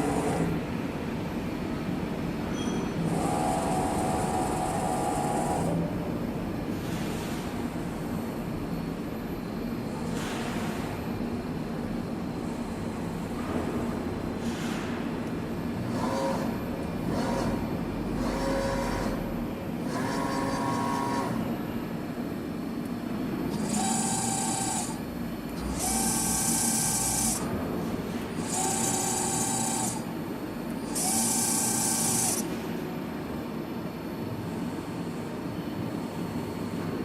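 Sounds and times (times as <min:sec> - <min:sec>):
machine steady hum: 0:00.0 - 0:02.3, 0:03.1 - 0:06.7, 0:15.1 - 0:37.0
milling machine motors whining: 0:19.9 - 0:21.4, 0:23.5 - 0:27.5, 0:28.3 - 0:30.1, 0:30.8 - 0:32.5.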